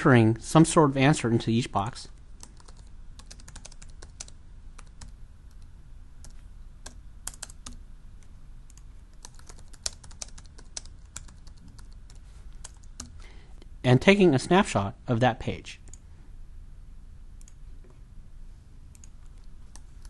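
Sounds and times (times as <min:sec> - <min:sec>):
keyboard typing clicks: 0:02.4 - 0:07.8, 0:18.9 - 0:19.9.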